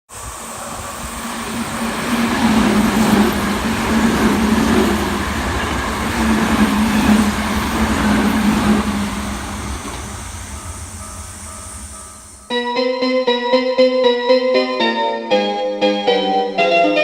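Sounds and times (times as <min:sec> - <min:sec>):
train wheel and running noise: 0:00.1 - 0:12.5.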